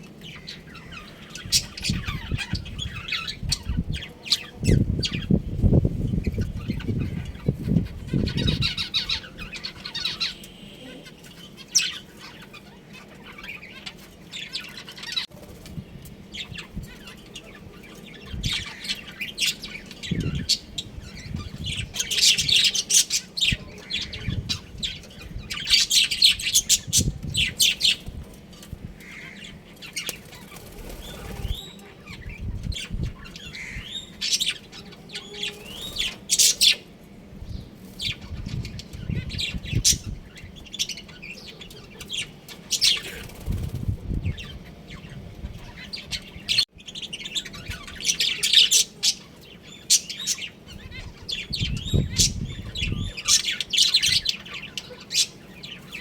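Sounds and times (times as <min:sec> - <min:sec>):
budgerigars chirping: 0:00.2 - 0:05.4, 0:06.1 - 0:15.3, 0:16.3 - 0:28.1, 0:29.0 - 0:36.9, 0:44.3 - 0:56.0
wing flapping: 0:30.0 - 0:31.6, 0:42.8 - 0:44.2.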